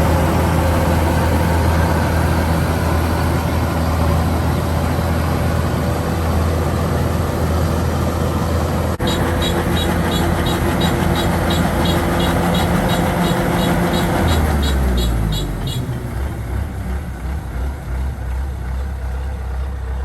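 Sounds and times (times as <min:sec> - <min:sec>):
diesel engine running under load: 0:00.0 - 0:20.0
fast high ticking: 0:09.0 - 0:15.8.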